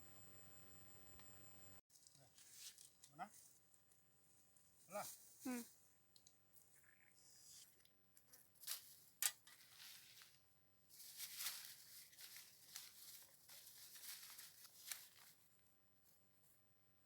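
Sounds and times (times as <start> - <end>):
rustling and crinkling: 1.9 - 3.6, 8.2 - 16.2.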